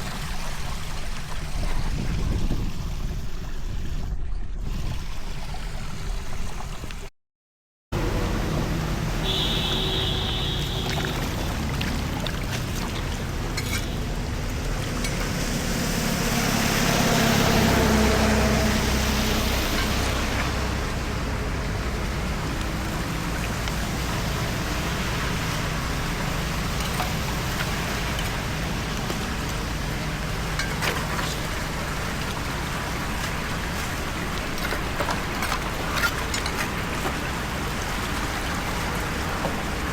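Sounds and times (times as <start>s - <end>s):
water rushing into drain: 8.0s - 39.9s.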